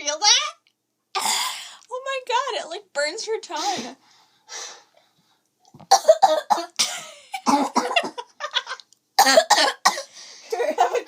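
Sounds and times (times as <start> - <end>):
girl coughing harshly: 1.2 - 1.7, 5.9 - 8.3, 9.2 - 11.0.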